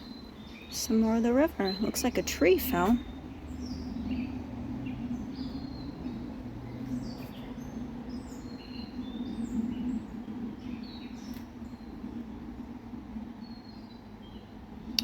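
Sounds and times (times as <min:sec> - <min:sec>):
songbirds chirping: 0:00.0 - 0:15.0.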